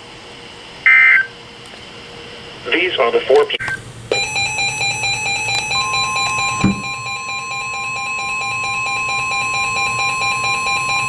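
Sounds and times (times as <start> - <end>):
click: 3.6 - 7.0
steady alarm tone: 3.6 - 11.0
pulsing electronic beep: 4.1 - 11.0.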